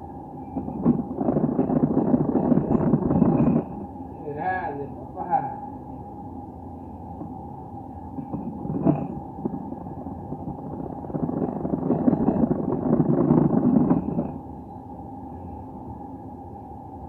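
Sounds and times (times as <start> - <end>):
pasta machine humming: 0.0 - 4.2, 7.0 - 14.6
rough rattling: 0.6 - 3.8, 8.2 - 14.4.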